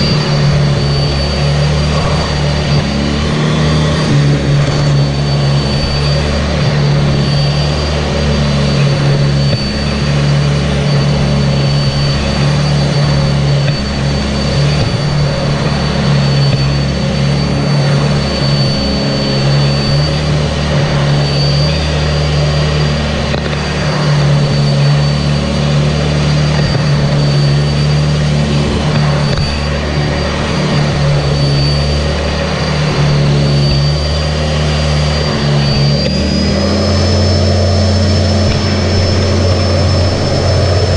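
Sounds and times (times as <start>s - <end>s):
upright vacuum cleaner running: 0.0s - 40.9s.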